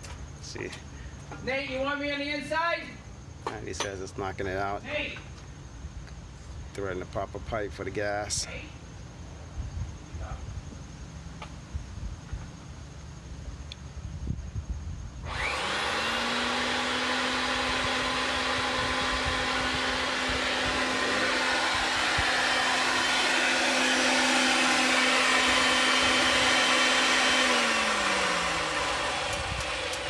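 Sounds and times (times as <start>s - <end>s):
pipe threading machine whining: 15.2s - 30.0s.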